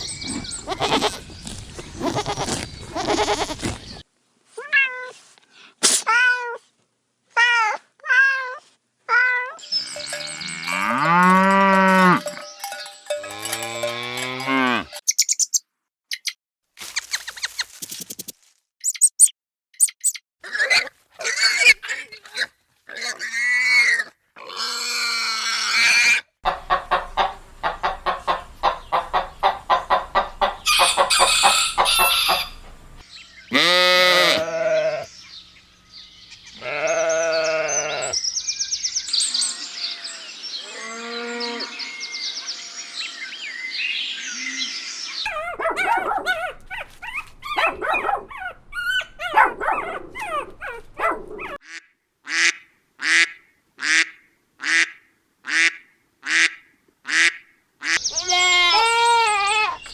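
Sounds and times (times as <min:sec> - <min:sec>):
poultry honking and clucking: 0:00.0 - 0:01.3, 0:01.9 - 0:04.0, 0:09.6 - 0:15.0, 0:26.0 - 0:32.6, 0:33.5 - 0:35.1, 0:36.2 - 0:38.2, 0:57.1 - 0:59.9.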